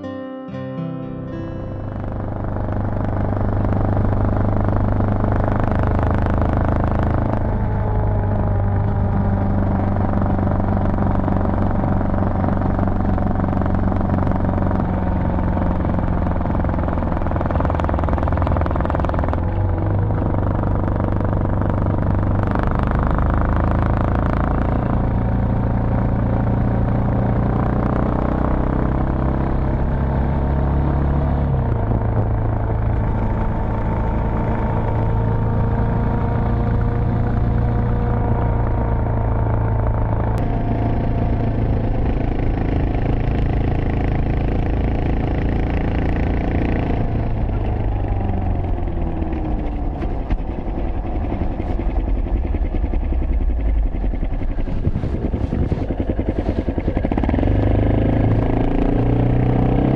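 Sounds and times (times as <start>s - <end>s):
motorcycle engine running: 1.7s - 59.9s.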